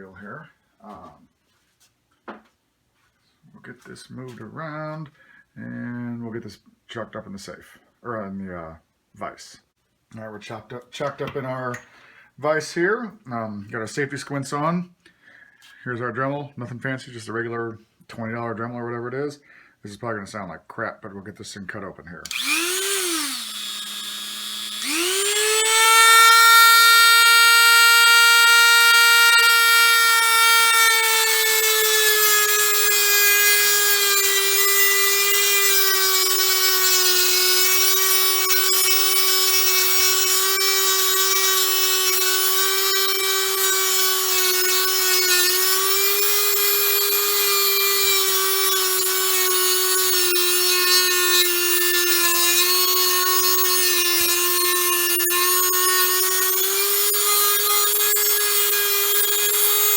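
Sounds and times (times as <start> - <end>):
rotary tool cutting steel rod: 22.3 - 59.9.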